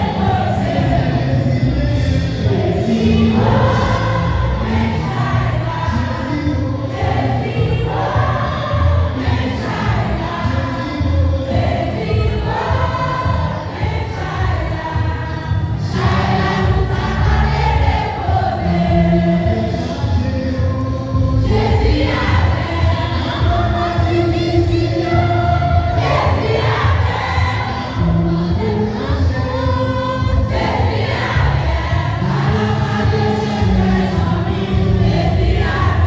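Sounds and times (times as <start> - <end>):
choir singing a hymn: 0.0 - 36.0
steady low bass: 0.0 - 36.0.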